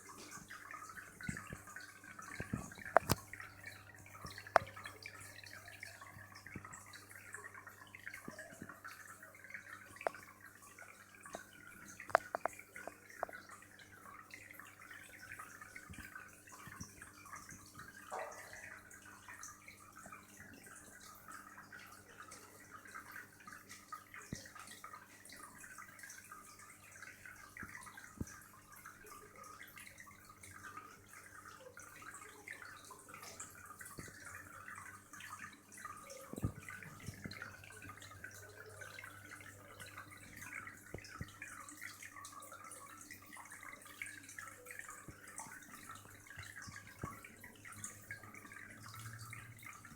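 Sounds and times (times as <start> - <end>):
aquarium water bubbling and trickling: 0.0 - 49.9
faint clicks: 1.2 - 3.5, 11.2 - 13.6.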